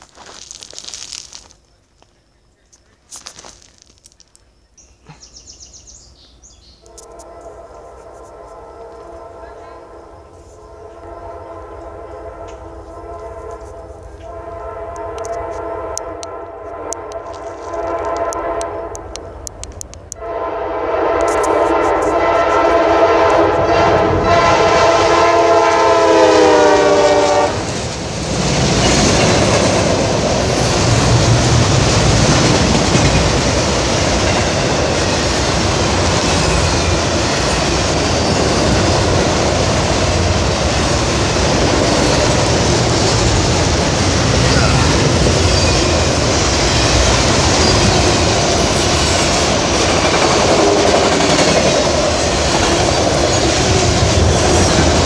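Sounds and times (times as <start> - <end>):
locomotive horn chord: 6.8 - 19.2, 20.1 - 27.7
train wheels rumbling on rails: 6.8 - 55.0.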